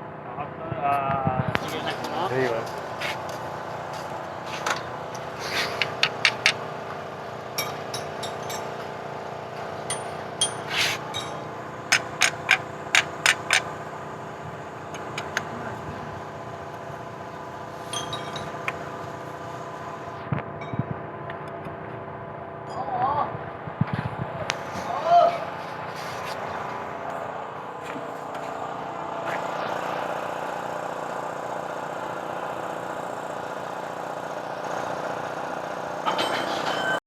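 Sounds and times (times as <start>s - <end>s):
steady background hum: 0.0s - 33.0s
metal tools clinking: 7.6s - 8.9s, 9.9s - 12.6s, 17.9s - 18.8s.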